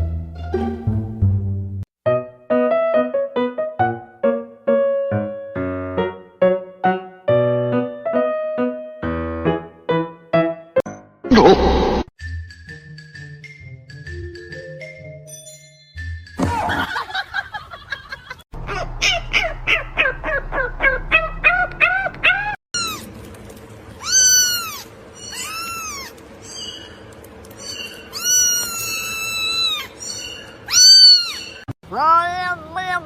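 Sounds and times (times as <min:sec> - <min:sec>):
high chirping animal calls: 0:18.6 - 0:23.1, 0:24.0 - 0:31.7
cat meowing: 0:24.0 - 0:26.2, 0:28.1 - 0:29.9, 0:30.7 - 0:33.0.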